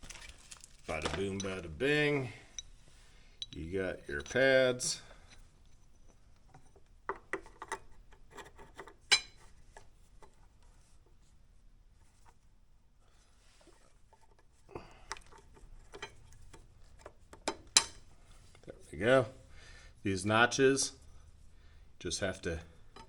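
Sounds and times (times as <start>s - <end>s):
rubbing and rustling: 5.4s - 14.7s.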